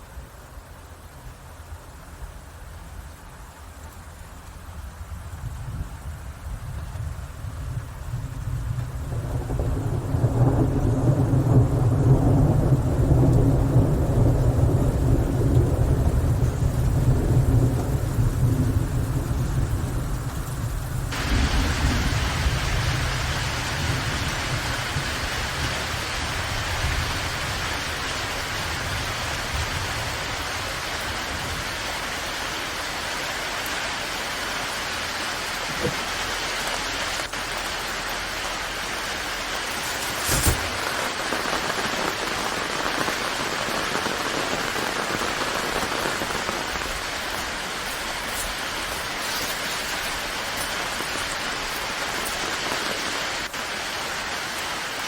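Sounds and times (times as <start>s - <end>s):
heavy rain falling: 0.0s - 55.0s
low rumble of thunder: 4.7s - 32.0s.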